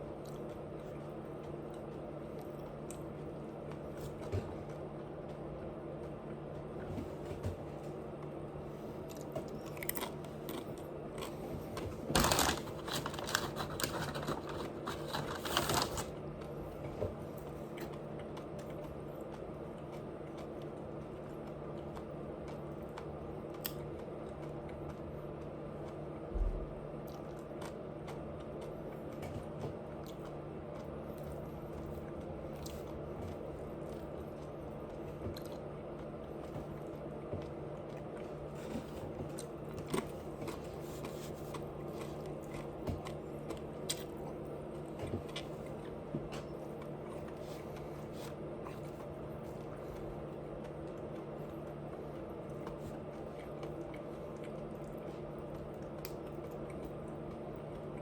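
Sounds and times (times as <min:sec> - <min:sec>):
quiet chewing: 0:00.0 - 0:26.3, 0:26.9 - 0:58.0
low steady hum: 0:00.0 - 0:58.0
person crunching food: 0:09.0 - 0:11.4, 0:12.0 - 0:16.3.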